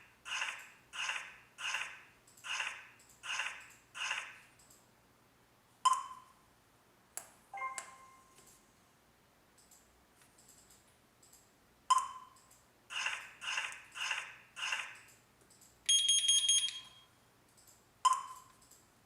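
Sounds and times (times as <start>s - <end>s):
alarm panel beeps: 15.9s - 17.1s.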